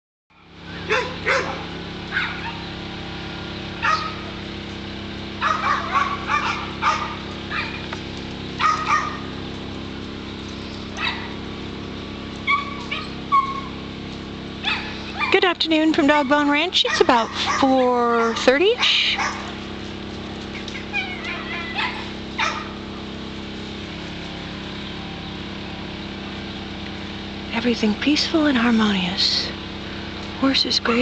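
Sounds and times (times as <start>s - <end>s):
steady low hum: 0.4s - 31.0s
dog barking: 0.9s - 2.6s, 3.8s - 4.3s, 5.4s - 7.9s, 8.6s - 9.3s, 11.0s - 11.4s, 12.5s - 13.7s, 14.6s - 15.4s, 16.8s - 19.6s, 21.0s - 22.8s.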